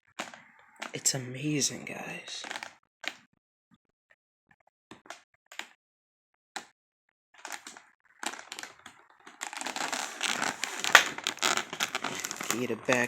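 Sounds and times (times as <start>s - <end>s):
packaging rustling and crinkling: 2.4s - 2.7s, 7.4s - 13.0s.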